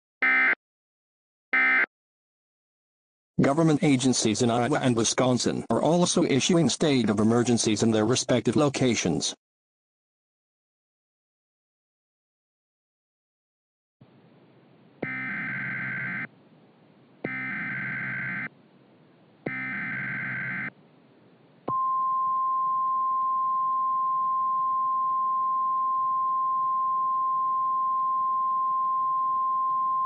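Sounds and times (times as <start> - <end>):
steady warning alarm tone: 15.0 - 16.3, 17.3 - 18.5, 19.5 - 20.7.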